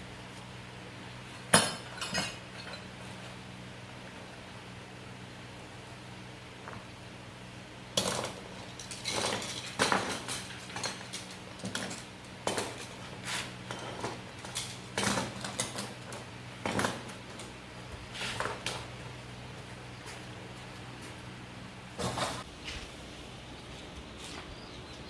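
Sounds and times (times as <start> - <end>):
metal parts clinking: 8.0 - 13.0.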